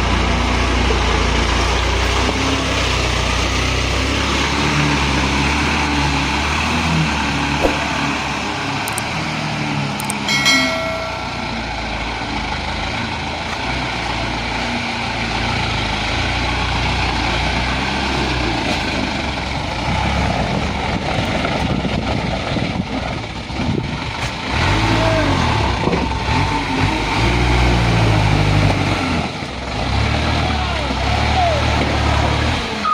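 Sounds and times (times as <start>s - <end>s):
diesel truck engine revving: 0.0s - 10.2s, 11.4s - 32.9s
short high note: 10.3s - 11.8s.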